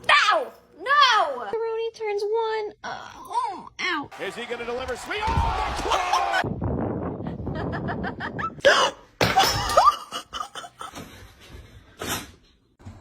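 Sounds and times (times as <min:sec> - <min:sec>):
person laughing: 0:07.3 - 0:08.7.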